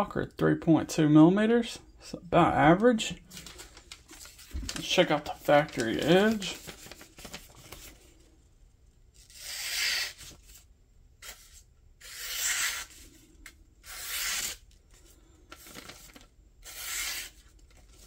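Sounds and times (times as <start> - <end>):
knife blade slicing paper: 9.2 - 10.6, 11.2 - 13.1, 13.8 - 14.6, 16.6 - 17.4.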